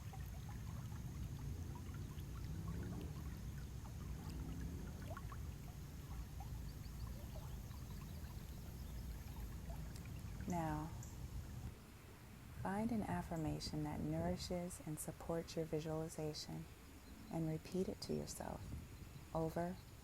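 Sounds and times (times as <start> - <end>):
running water rushing: 0.0 - 11.8
water trickling and bubbling: 0.0 - 11.8.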